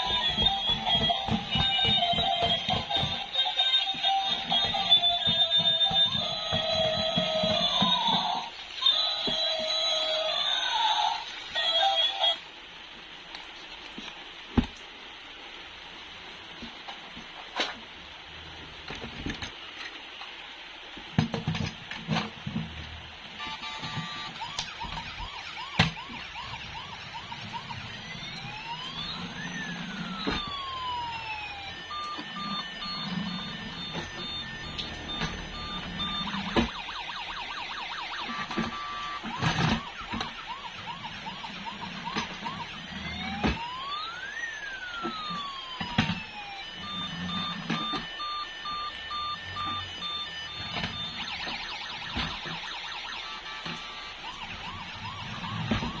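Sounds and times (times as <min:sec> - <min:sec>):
toy siren wails: 0:00.0 - 0:12.4, 0:23.4 - 0:56.0
quick electronic beeps and warbles: 0:46.8 - 0:51.4.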